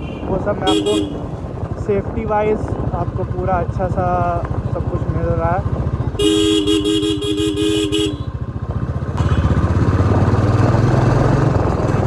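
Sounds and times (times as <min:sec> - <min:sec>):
vehicle horn: 0:00.0 - 0:01.4, 0:06.2 - 0:08.4, 0:09.2 - 0:09.7.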